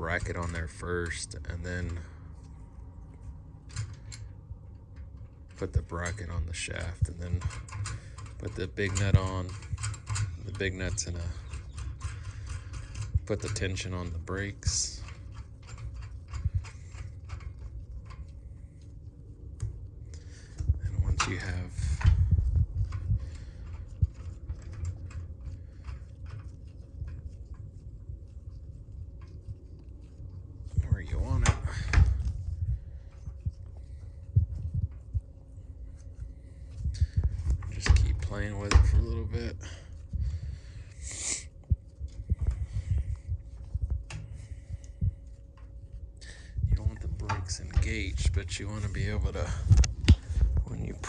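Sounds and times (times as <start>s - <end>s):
low thumps: 46.3s - 51.0s.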